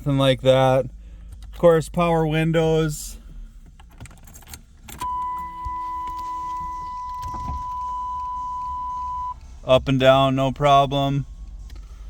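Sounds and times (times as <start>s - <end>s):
power window motor whine: 4.9s - 9.4s.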